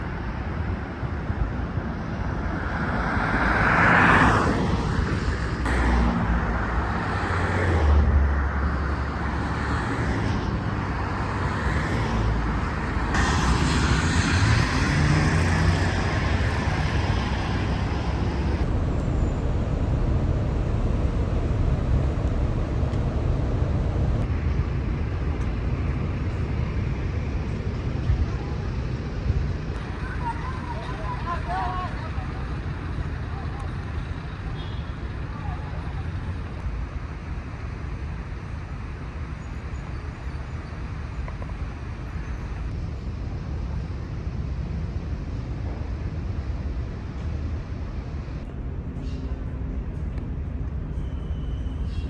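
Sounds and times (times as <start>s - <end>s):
vehicles passing with low rumble: 0.0s - 52.0s.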